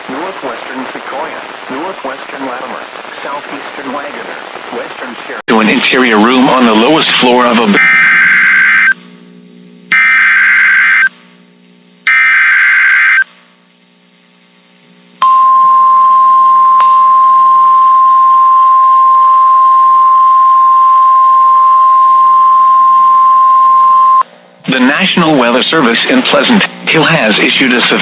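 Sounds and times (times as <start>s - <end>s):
digital data tone bursts: 7.2s - 9.0s, 9.9s - 11.1s, 12.1s - 13.2s
steady single-pitch alarm tone: 7.8s - 9.0s, 9.9s - 11.1s, 12.1s - 13.3s.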